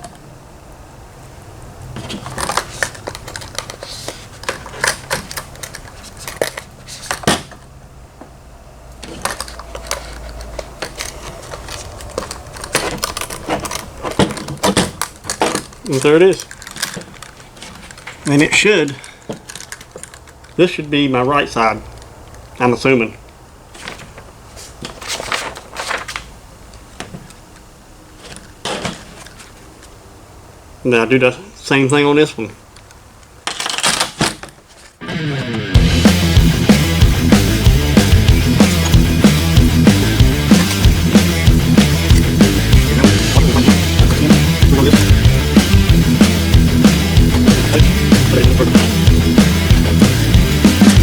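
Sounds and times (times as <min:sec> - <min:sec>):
rustling scrapes: 0:01.9 - 0:07.3, 0:09.0 - 0:20.3, 0:23.7 - 0:26.3
small metal hardware clinking: 0:09.0 - 0:20.6.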